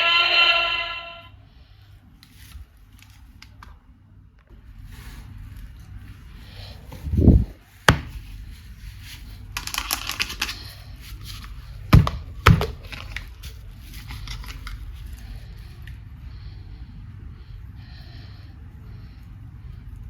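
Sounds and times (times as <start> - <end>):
plastic packaging crinkling: 8.4 - 11.8, 12.4 - 15.4.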